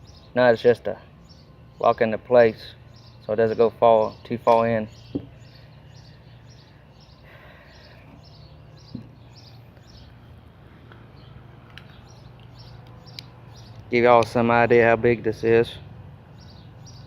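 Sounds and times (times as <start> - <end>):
steady low hum: 0.0 - 17.0
soft knock: 5.1 - 5.3.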